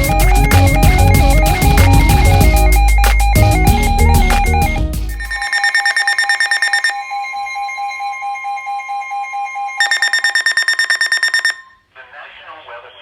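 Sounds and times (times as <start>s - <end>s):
fast pulsing high beep: 5.1s - 11.8s
steady lower alert tone: 5.2s - 7.9s, 9.8s - 11.8s.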